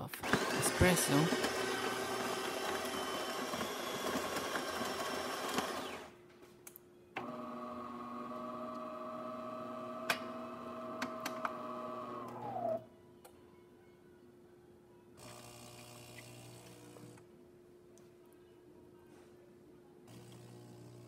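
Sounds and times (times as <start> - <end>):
coffee grinder whirring: 0.2 - 6.1, 7.2 - 12.8, 20.1 - 21.0.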